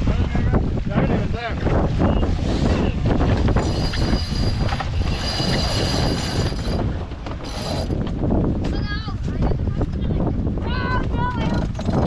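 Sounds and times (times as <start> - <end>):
wind buffeting microphone: 0.0 - 12.0
high-pitched mechanical squeal: 2.1 - 6.8.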